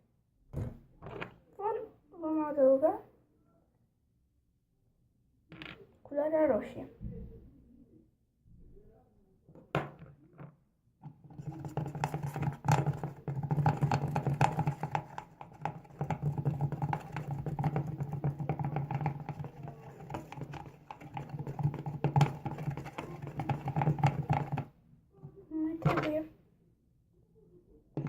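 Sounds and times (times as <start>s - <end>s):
utensil scraping in a bowl: 11.2s - 24.7s.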